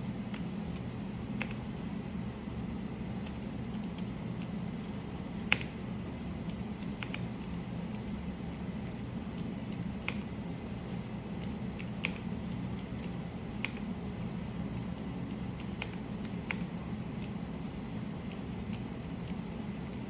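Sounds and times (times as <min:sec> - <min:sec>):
steady low hum: 0:00.0 - 0:20.0
keyboard parts clicking: 0:03.2 - 0:05.8, 0:14.7 - 0:17.4.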